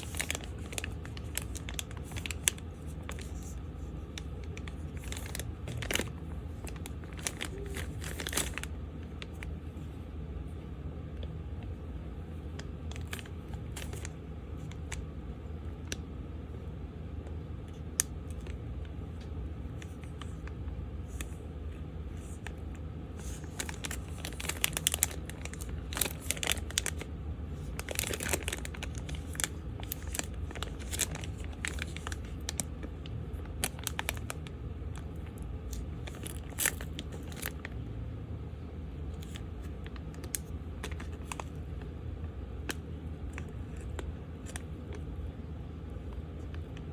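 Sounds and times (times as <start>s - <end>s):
packaging crinkling and tearing: 0.0s - 9.5s, 12.6s - 15.0s, 23.2s - 37.8s, 39.1s - 41.8s, 42.6s - 45.0s
steady low hum: 0.0s - 46.9s.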